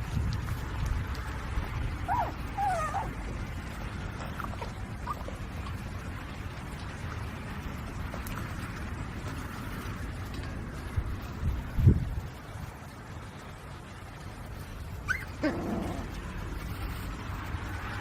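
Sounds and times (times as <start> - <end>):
high whimpers: 2.1 - 3.1, 15.0 - 16.2.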